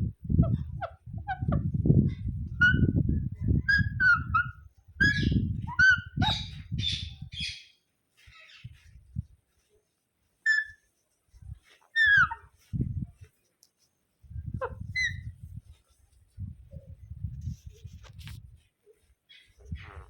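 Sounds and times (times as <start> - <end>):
parrot squawks and chirps: 2.6 - 2.9, 3.7 - 7.7, 10.5 - 10.8, 11.9 - 12.5, 14.6 - 15.3.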